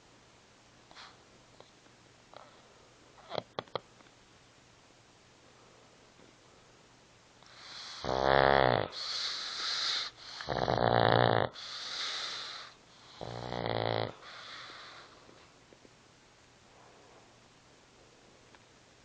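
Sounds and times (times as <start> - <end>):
person snoring: 7.6 - 15.1.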